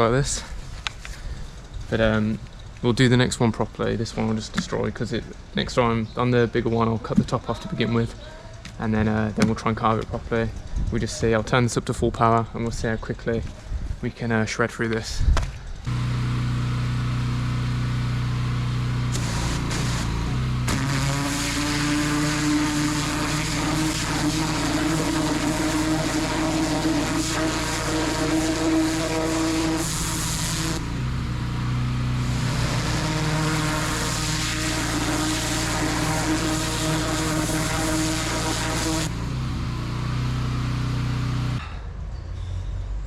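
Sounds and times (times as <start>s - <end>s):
pressure washer engine running: 15.9s - 41.6s
pressure washer spray hissing: 19.0s - 39.2s.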